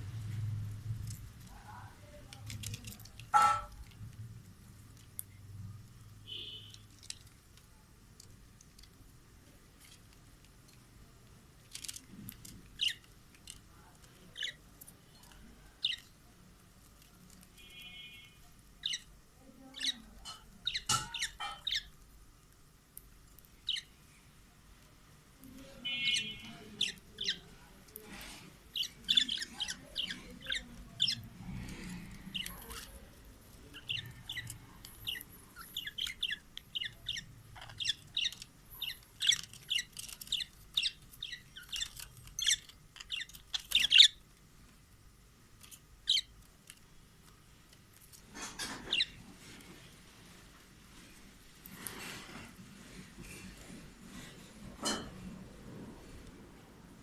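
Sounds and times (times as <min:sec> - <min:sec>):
budgerigars chirping and squawking: 0:03.3 - 0:03.8, 0:12.8 - 0:13.0, 0:18.8 - 0:19.1, 0:19.8 - 0:20.0, 0:20.6 - 0:21.9, 0:25.9 - 0:27.4, 0:28.7 - 0:33.1, 0:33.7 - 0:44.2, 0:46.1 - 0:46.3, 0:48.4 - 0:49.2.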